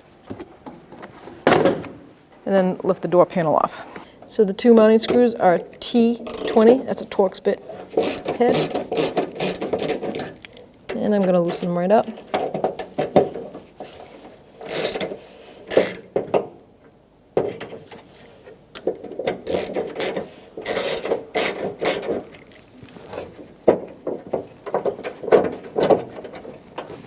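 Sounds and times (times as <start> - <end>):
hand ratchet clicking: 6.2 - 6.8, 8.0 - 10.3, 14.6 - 15.1, 15.7 - 16.1, 19.3 - 22.4.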